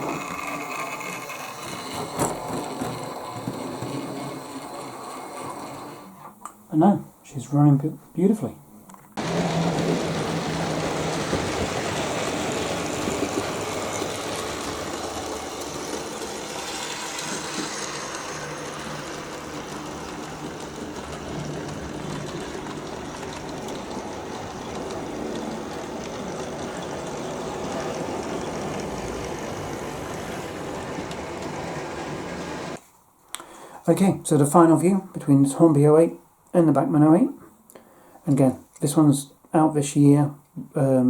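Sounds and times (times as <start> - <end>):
model train motor humming: 0.0 - 6.1, 9.2 - 32.8
wheels rolling on rails: 0.0 - 6.3, 9.2 - 32.8.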